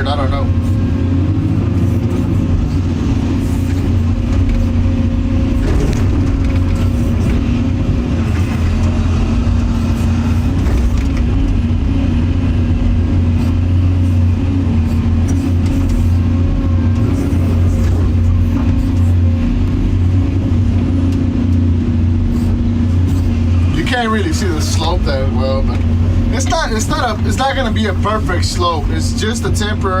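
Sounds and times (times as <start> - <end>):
excavator diesel engine droning: 0.0 - 30.0.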